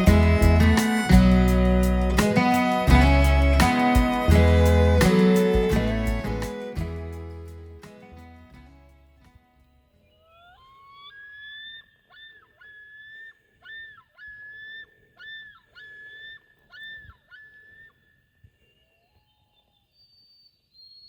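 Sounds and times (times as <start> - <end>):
whistled animal calls: 10.3 - 21.0.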